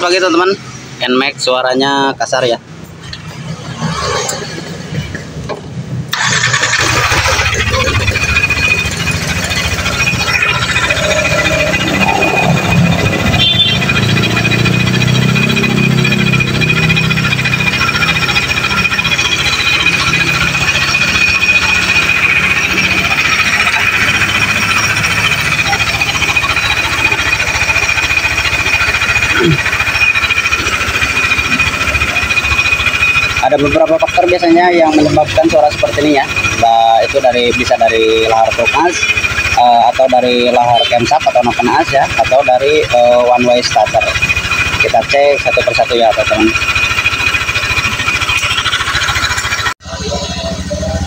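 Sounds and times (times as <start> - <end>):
scooter engine starting and idling: 3.0 - 51.0.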